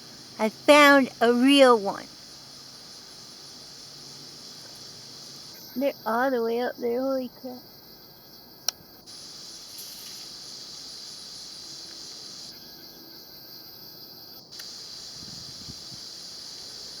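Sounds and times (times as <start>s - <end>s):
cicadas droning: 0.0s - 17.0s.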